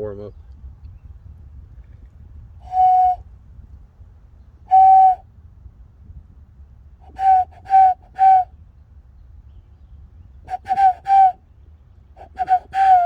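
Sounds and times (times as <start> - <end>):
person whistling bird calls: 10.5 - 11.4, 12.2 - 13.0.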